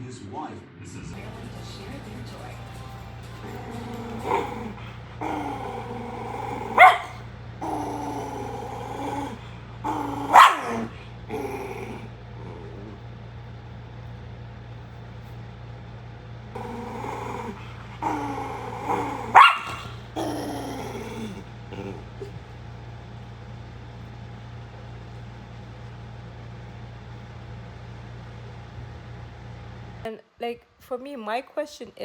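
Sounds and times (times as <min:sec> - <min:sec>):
dog growling: 0:02.8 - 0:13.4, 0:16.5 - 0:22.7
dog barking sharply: 0:06.6 - 0:07.2, 0:10.0 - 0:11.0, 0:19.2 - 0:20.0.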